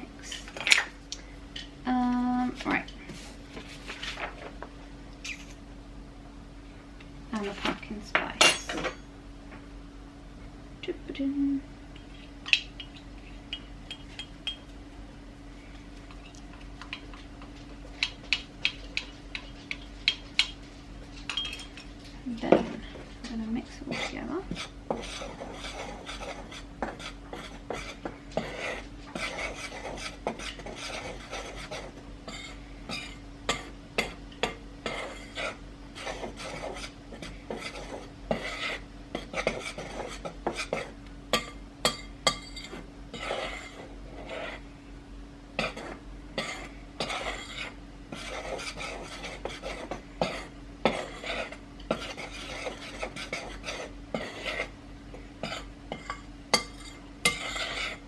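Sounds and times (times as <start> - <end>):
utensil scraping mixing bowl: 23.4 - 41.0, 42.6 - 44.6, 45.6 - 58.0.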